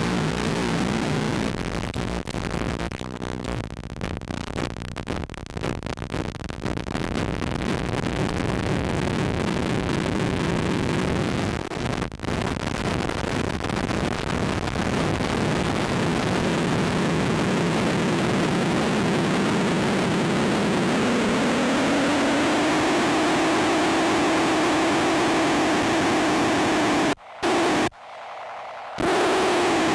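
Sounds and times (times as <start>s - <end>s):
fuzz and feedback noise: 17.6s - 29.9s
low drone rising in pitch: 20.9s - 29.9s.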